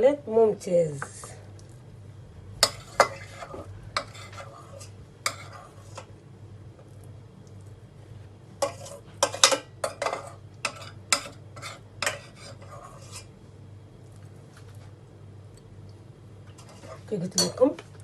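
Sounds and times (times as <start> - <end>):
utensils clinking against dishes: 8.6 - 13.3, 16.5 - 17.8.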